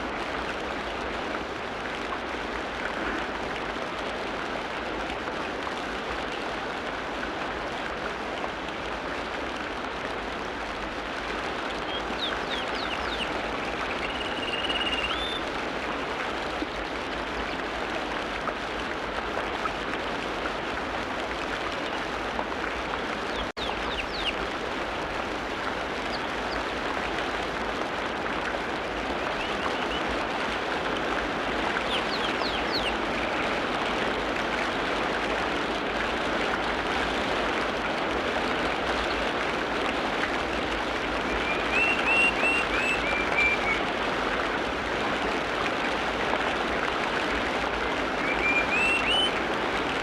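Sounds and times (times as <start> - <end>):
hiss of rain or rushing water: 0.0 - 50.0
birds chirping: 11.8 - 15.4, 23.3 - 24.4, 31.8 - 33.0
bird whistle: 14.0 - 15.4, 41.4 - 43.8, 48.2 - 49.3.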